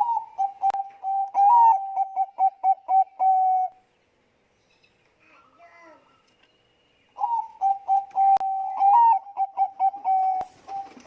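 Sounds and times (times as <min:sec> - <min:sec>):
dove cooing: 0:00.0 - 0:03.8, 0:07.2 - 0:11.0.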